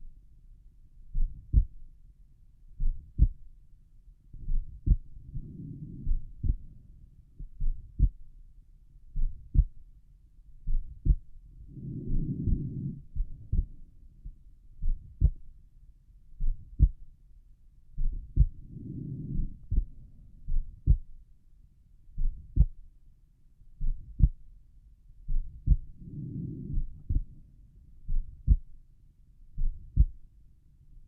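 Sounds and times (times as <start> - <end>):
heartbeat thumps: 1.1 - 1.8, 2.8 - 3.5, 4.4 - 6.8, 7.4 - 8.2, 9.2 - 9.8, 10.6 - 15.4, 16.4 - 17.0, 18.0 - 21.2, 22.2 - 22.8, 23.8 - 24.4, 25.3 - 27.4, 28.1 - 28.8, 29.6 - 30.2.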